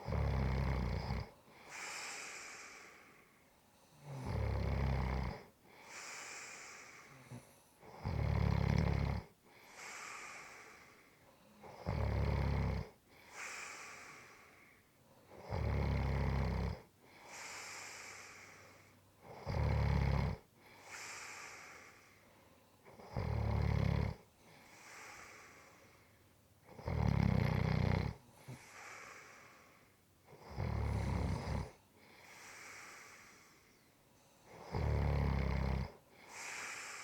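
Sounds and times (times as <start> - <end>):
person snoring: 0.0 - 3.1, 4.0 - 10.9, 11.6 - 14.5, 15.4 - 16.8, 19.4 - 22.1, 23.0 - 24.2, 26.7 - 29.7, 30.3 - 31.8, 34.5 - 37.0
quiet breathy exhale: 1.0 - 4.6, 5.3 - 8.0, 9.2 - 11.8, 12.8 - 15.4, 16.8 - 19.2, 20.4 - 23.0, 24.2 - 26.4, 28.1 - 30.1, 30.7 - 34.8, 35.9 - 37.0.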